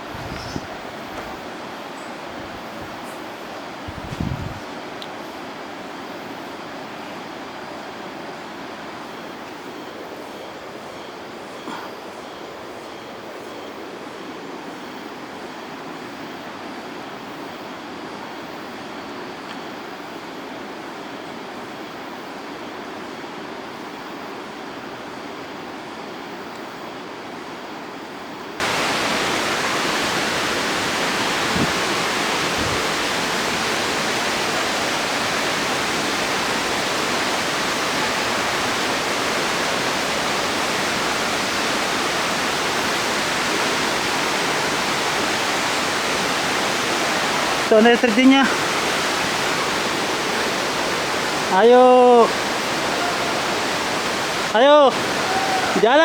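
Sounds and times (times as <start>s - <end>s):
waterfall roaring: 28.6s - 56.0s.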